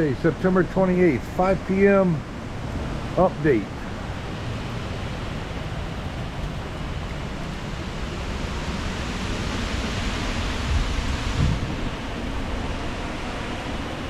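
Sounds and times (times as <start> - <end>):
strong wind blowing: 0.0 - 14.0
wind buffeting microphone: 0.0 - 14.0.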